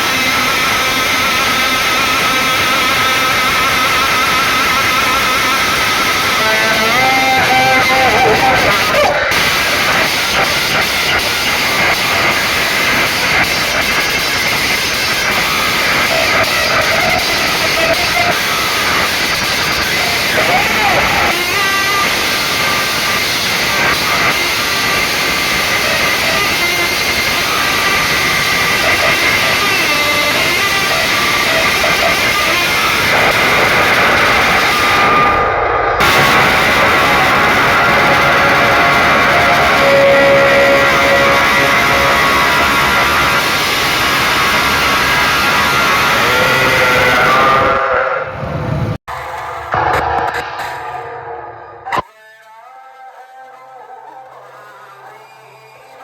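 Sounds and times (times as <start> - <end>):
overloaded sound system hiss: 0.0 - 52.0
dj mix through speakers: 0.0 - 56.0.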